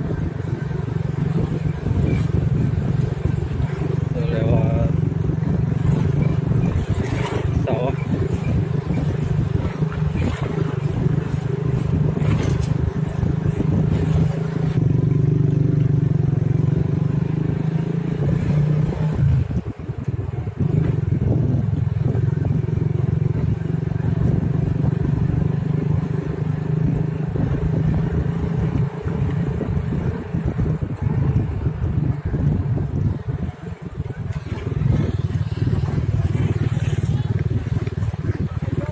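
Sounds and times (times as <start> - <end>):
motorcycle engine running: 0.0 - 38.9
road and wind noise: 0.0 - 38.9.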